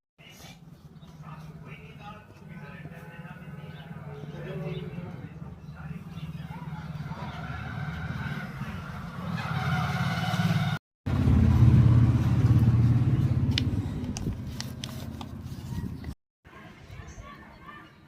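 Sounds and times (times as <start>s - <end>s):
motor engine humming: 3.4s - 16.1s.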